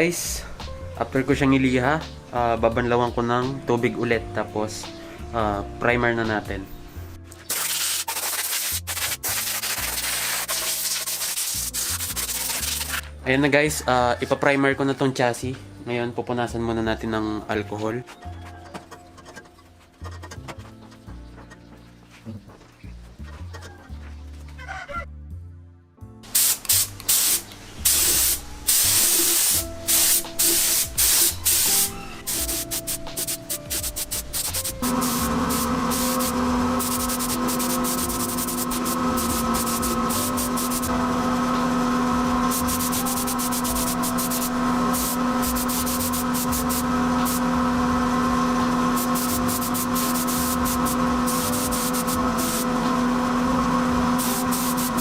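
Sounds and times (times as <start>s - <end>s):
spray paint hissing bursts: 7.5s - 13.0s, 26.3s - 41.0s, 42.4s - 47.5s, 48.9s - 52.8s, 54.1s - 55.0s
steady machine hum: 28.4s - 55.0s.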